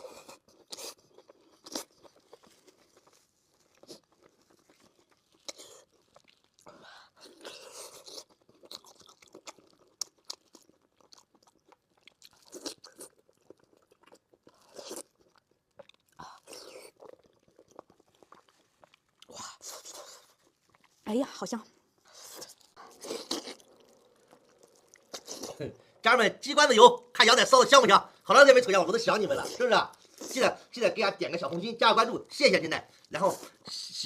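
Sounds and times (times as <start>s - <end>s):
person chewing with mouth smacks: 0.0s - 21.0s, 22.0s - 26.0s, 29.3s - 30.4s.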